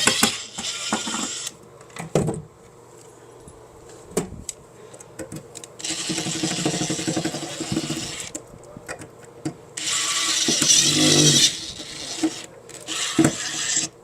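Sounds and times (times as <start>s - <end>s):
power tool motor running: 9.8s - 13.9s.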